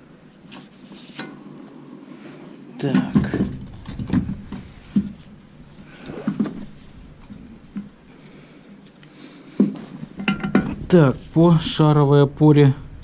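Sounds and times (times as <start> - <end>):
metal parts knocking and clunking: 2.8 - 5.2, 10.2 - 10.8.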